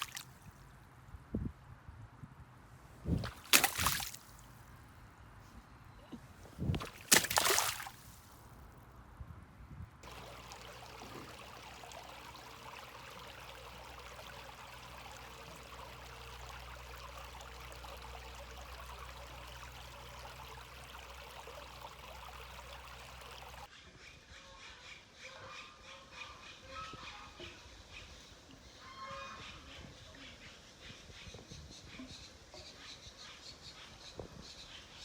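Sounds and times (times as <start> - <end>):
stream of water trickling: 0.0 - 0.8, 3.0 - 4.9, 6.4 - 8.7, 10.0 - 23.7.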